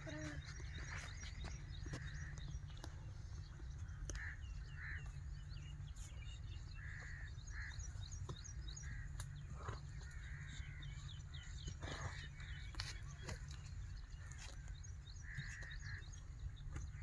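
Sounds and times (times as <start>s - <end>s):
birds chirping and calling: 0.0s - 17.0s
steady low rumble: 0.0s - 17.0s.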